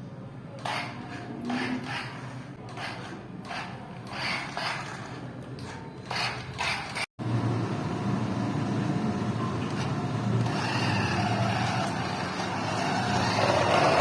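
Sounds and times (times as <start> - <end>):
toy car electric motor running: 0.6 - 5.2, 6.0 - 7.1, 10.4 - 14.0.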